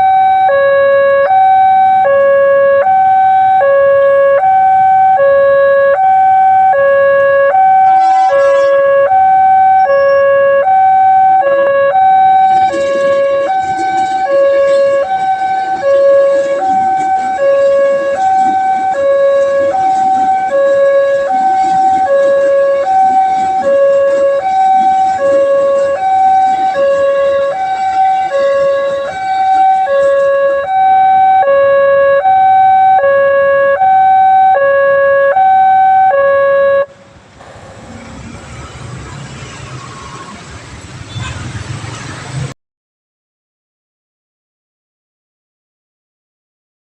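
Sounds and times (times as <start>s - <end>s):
two-tone level crossing alarm: 0.0s - 38.4s
rushing rattling noise: 12.2s - 30.9s, 36.9s - 42.5s.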